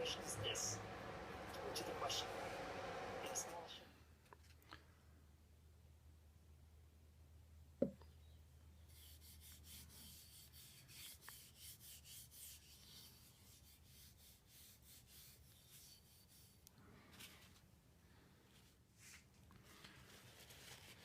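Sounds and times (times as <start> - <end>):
faint steady hum: 0.0 - 21.0
faint rubbing strokes: 8.8 - 21.0.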